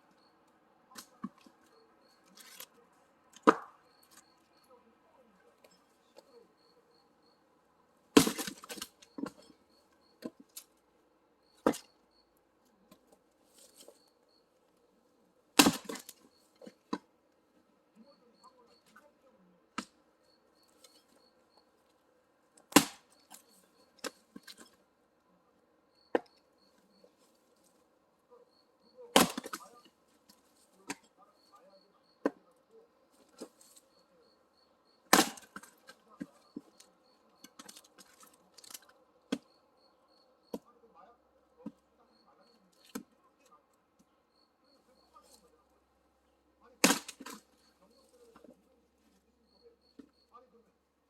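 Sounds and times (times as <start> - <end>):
axe splitting firewood: 3.4 - 4.2, 8.1 - 9.6, 11.6 - 11.9, 15.6 - 17.1, 22.6 - 24.8, 29.1 - 31.2, 32.2 - 32.4, 35.1 - 39.5, 46.8 - 47.6.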